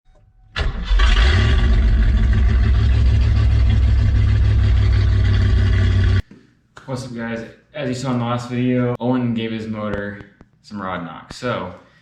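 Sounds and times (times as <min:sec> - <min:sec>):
vehicle engine running: 0:01.2 - 0:06.2.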